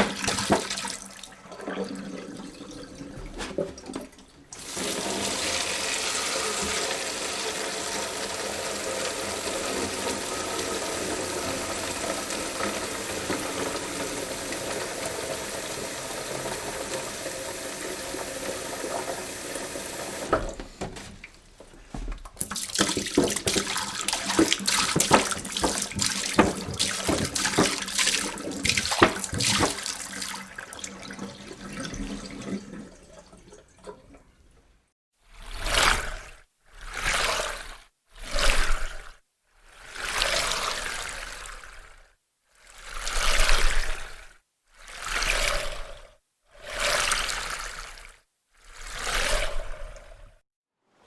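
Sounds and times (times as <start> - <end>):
water splashing and sloshing: 0.0 - 5.9, 18.0 - 39.2, 39.8 - 42.1, 42.7 - 44.3, 44.9 - 50.4
tap water running into sink: 0.0 - 34.7.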